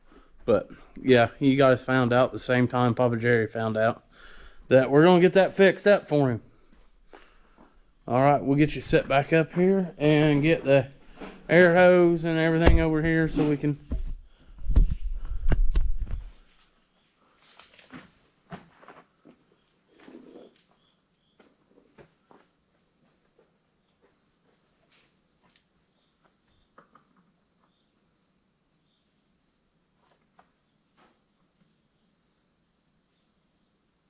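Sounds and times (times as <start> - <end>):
crickets chirping: 0.0 - 34.0
faint knocks and clatters: 8.9 - 11.6.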